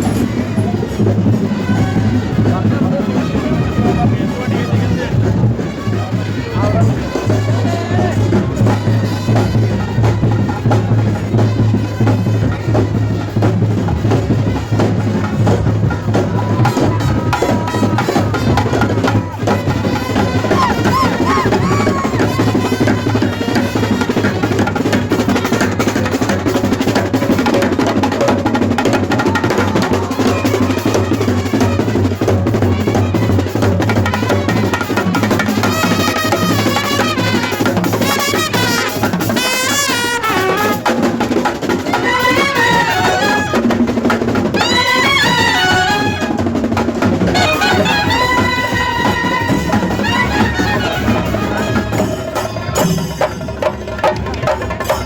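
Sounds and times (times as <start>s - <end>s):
drums in fast roll: 0.0s - 55.0s.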